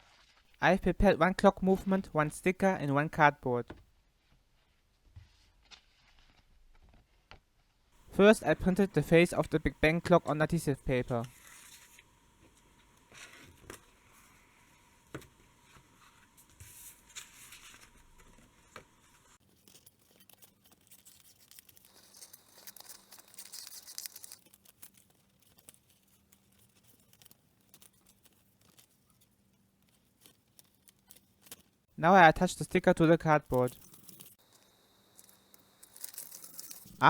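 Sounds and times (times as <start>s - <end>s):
paper scraping rustle: 11.2s - 31.7s, 35.2s - 37.0s.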